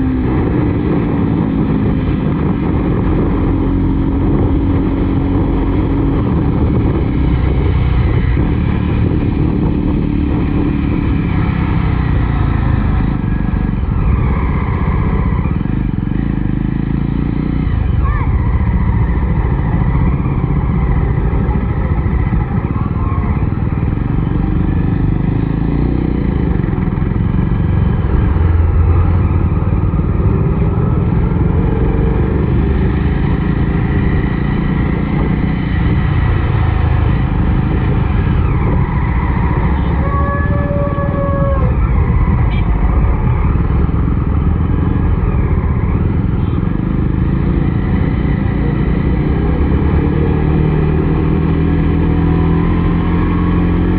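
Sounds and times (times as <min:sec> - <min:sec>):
motorcycle engine running: 0:00.0 - 0:53.9
road and wind noise: 0:00.0 - 0:53.9.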